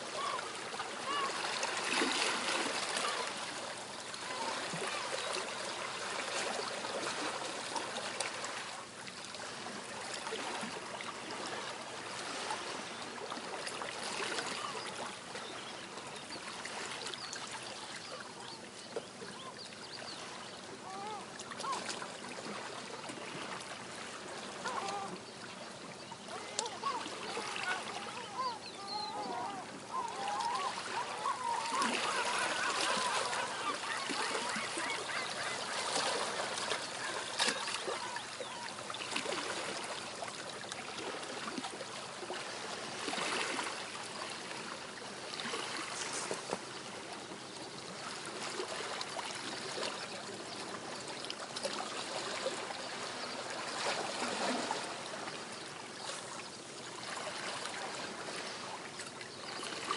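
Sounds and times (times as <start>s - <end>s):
gentle water washing: 0.0s - 59.9s
distant seagulls calling: 0.1s - 3.4s, 20.2s - 22.0s, 24.5s - 25.4s, 26.2s - 38.9s.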